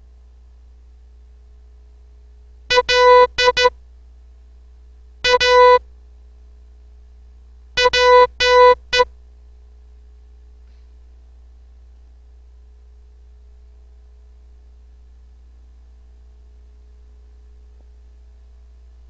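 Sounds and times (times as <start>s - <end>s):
morse code tone: 2.7s - 3.7s, 5.2s - 5.8s, 7.8s - 9.1s.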